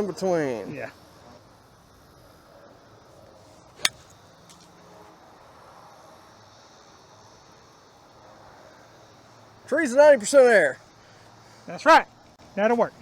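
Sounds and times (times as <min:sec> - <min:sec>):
faint outdoor background: 0:00.0 - 0:13.0
golf club striking ball: 0:03.8 - 0:04.7.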